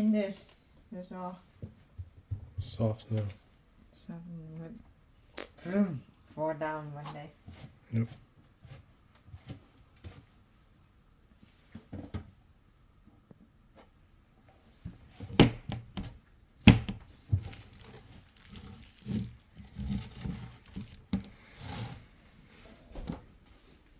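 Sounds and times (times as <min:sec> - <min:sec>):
objects knocking and clattering: 0:15.2 - 0:21.4.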